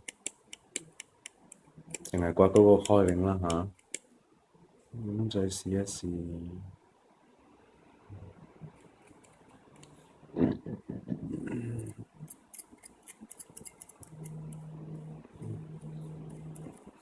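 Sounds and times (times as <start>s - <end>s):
sharp clicks: 0.0s - 4.0s
low steady hum: 0.0s - 17.0s.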